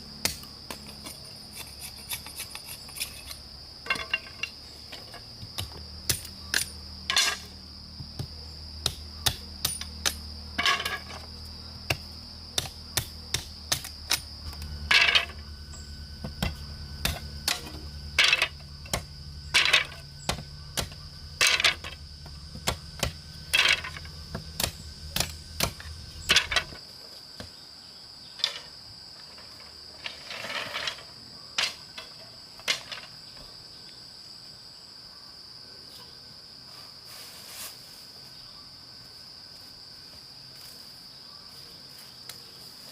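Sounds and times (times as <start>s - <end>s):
high insect drone: 0.0s - 42.9s
low hum: 5.8s - 26.8s.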